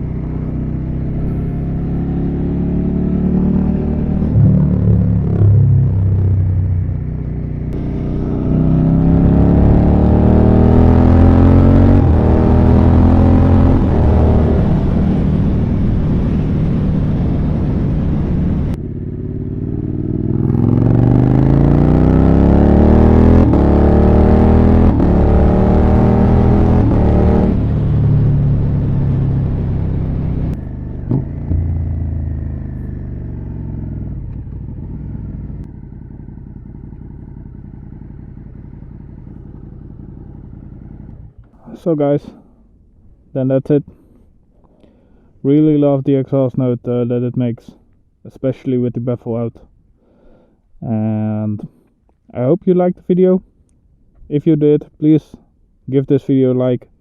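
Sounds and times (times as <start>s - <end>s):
motorcycle engine accelerating: 0.0s - 41.6s.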